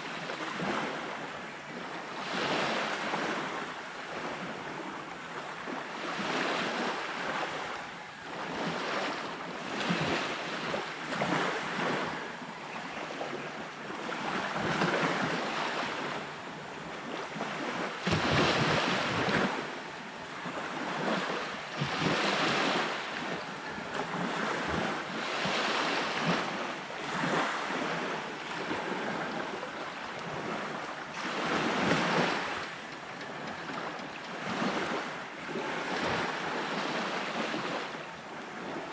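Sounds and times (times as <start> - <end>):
sea waves breaking: 0.0 - 38.9
wind blowing: 13.4 - 37.1.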